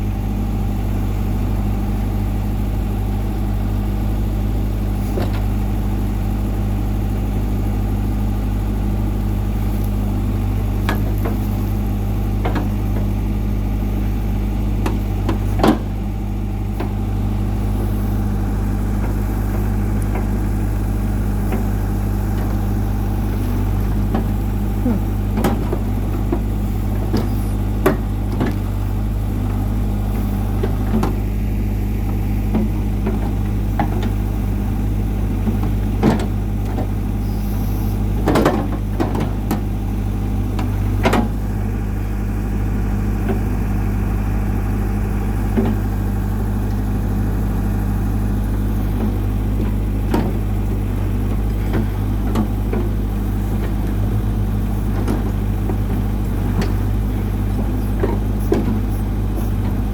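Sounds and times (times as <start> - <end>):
diesel engine running: 0.0 - 59.9
knocks and clanks: 10.8 - 13.3, 14.8 - 16.0, 16.7 - 31.3, 32.0 - 37.1, 38.1 - 41.6, 45.3 - 59.9.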